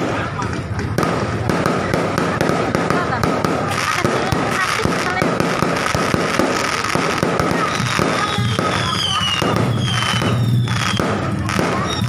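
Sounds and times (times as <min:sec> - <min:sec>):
fireworks crackling: 0:00.0 - 0:12.0
firework whistles falling in pitch: 0:07.1 - 0:12.0.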